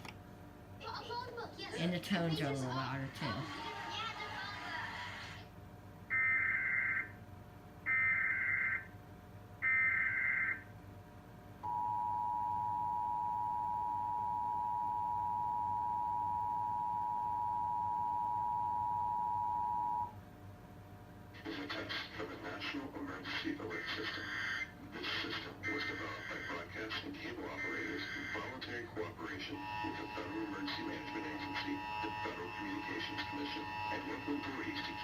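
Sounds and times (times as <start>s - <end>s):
two-tone attention signal: 11.6s - 20.1s.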